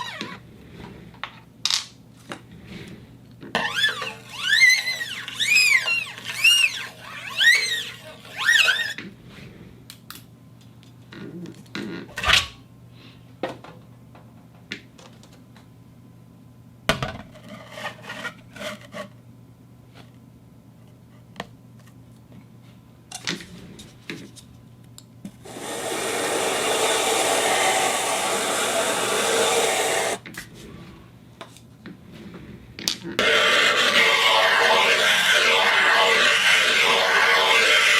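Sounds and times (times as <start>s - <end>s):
loud steady rushing noise: 25.5s - 30.2s
record scratching: 33.2s - 37.9s.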